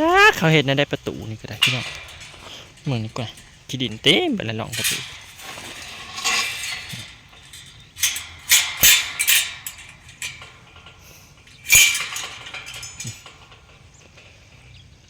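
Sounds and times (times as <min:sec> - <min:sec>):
sharp clinks and knocks: 0:01.0 - 0:15.0.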